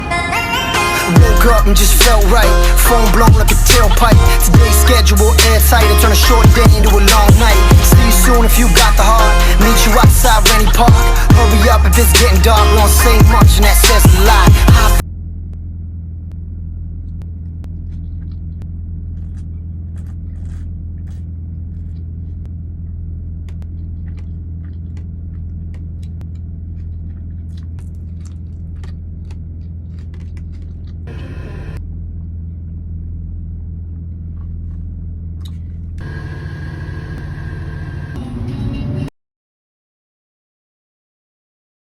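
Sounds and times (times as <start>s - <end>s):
car engine idling: 0.1s - 39.1s
food handling clicks and crackles: 17.7s - 22.5s, 23.5s - 31.1s.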